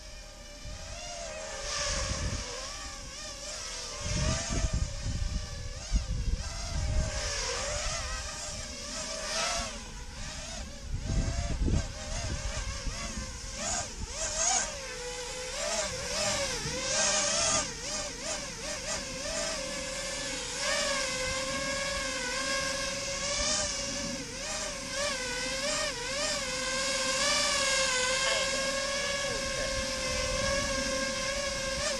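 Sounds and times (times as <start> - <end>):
quadcopter motors whining: 0.0 - 31.9.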